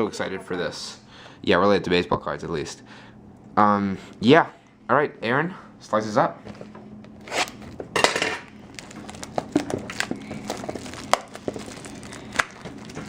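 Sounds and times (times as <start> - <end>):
plastic shrink-wrap crinkling: 8.5 - 13.0.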